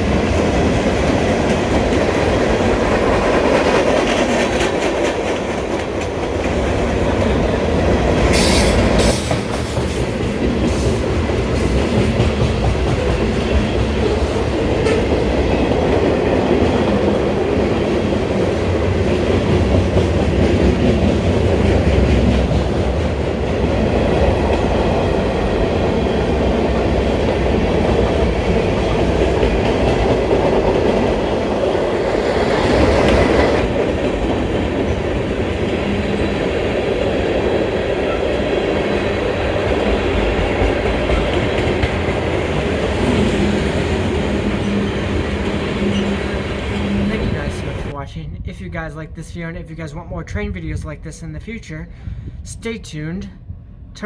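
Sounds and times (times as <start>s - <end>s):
freight train rumbling past: 0.0s - 54.0s
wheels clicking over rail joints: 33.0s - 47.9s.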